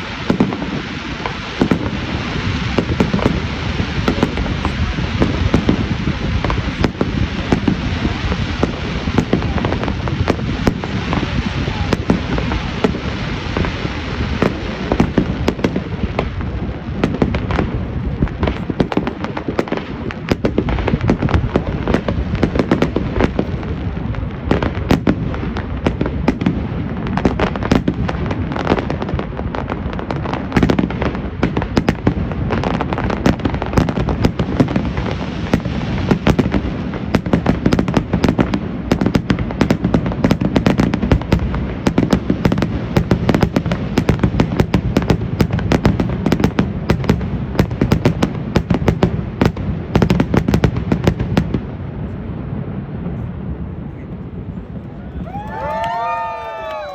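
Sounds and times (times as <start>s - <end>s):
steady low rumble: 0.0s - 27.2s
fireworks bangs and crackling: 0.0s - 56.9s.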